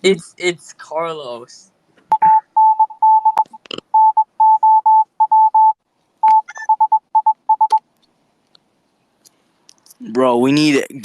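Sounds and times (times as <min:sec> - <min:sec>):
morse code beeps: 0:02.1 - 0:07.8.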